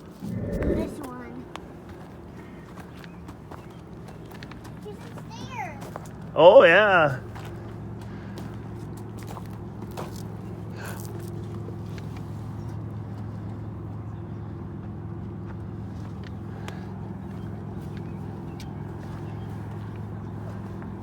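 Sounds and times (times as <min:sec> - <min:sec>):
distant engine drone: 0:00.0 - 0:03.2, 0:16.2 - 0:21.0.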